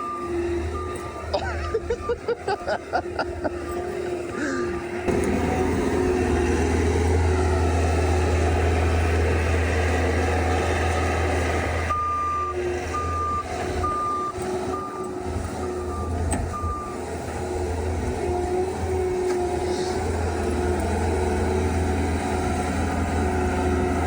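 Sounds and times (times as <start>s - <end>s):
reversing alarm beeping: 0.0s - 6.2s, 10.1s - 18.9s
diesel engine running under load: 0.0s - 24.0s.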